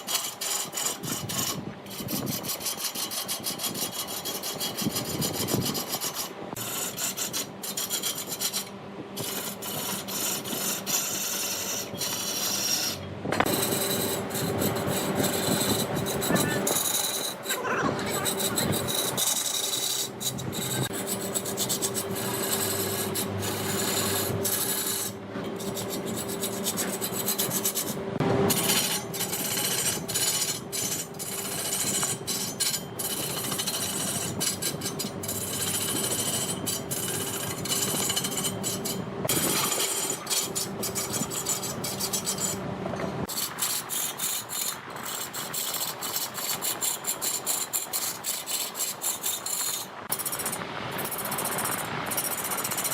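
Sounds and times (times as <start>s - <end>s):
cutting tool scraping wood: 0.0s - 52.9s
wood lathe turning log: 0.0s - 52.9s
steady hum: 3.7s - 44.0s.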